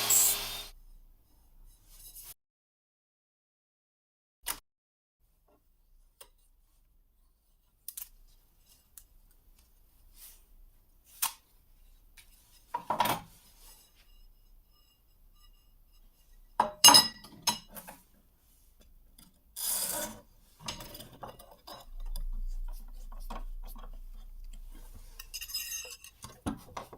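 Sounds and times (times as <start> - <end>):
file rasping across knife blade: 0.0 - 0.7.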